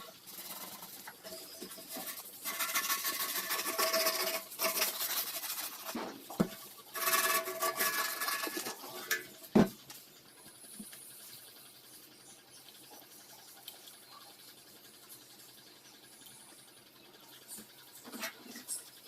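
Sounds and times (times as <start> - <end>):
hand rubbing sheet metal: 0.0 - 9.8.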